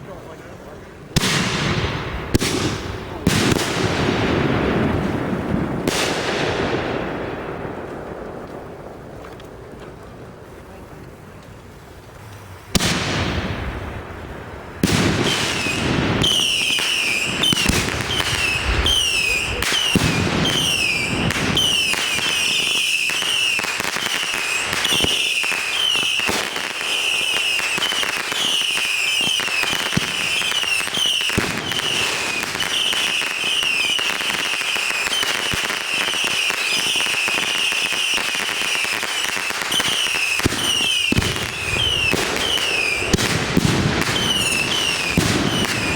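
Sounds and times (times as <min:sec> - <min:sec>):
fireworks bangs and cracks: 0:01.1 - 0:45.9
short falling whistles: 0:16.2 - 0:21.9.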